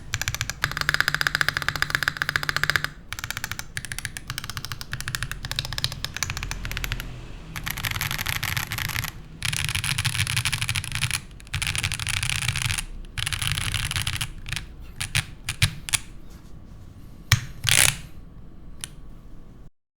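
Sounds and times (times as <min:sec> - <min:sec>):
mechanical keyboard typing: 0:00.0 - 0:16.2, 0:17.3 - 0:18.0.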